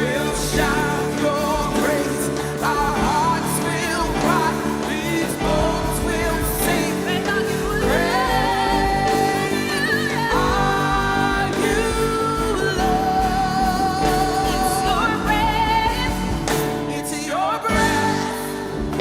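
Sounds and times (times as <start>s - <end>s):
live worship band playing: 0.0s - 19.0s.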